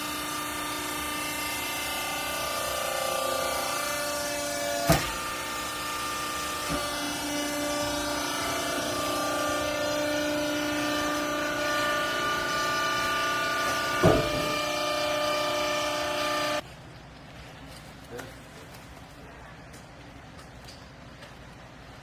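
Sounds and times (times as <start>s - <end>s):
hydraulic pump motor whine: 0.0s - 16.6s.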